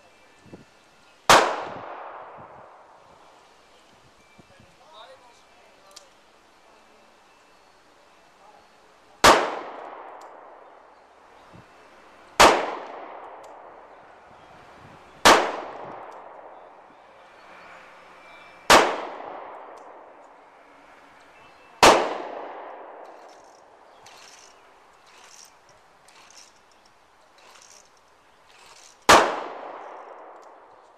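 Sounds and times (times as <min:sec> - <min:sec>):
handgun shots with echo: 0:09.2 - 0:10.4, 0:12.4 - 0:13.7, 0:15.2 - 0:16.5, 0:21.8 - 0:23.1, 0:29.1 - 0:30.6.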